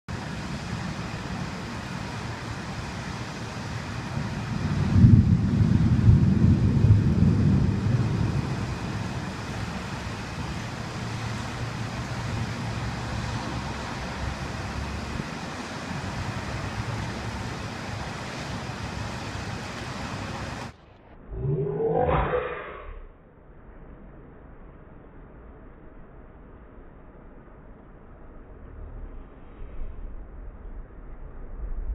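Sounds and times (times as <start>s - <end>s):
wind noise on microphone: 4.0s - 12.8s
low rumble: 20.8s - 31.9s.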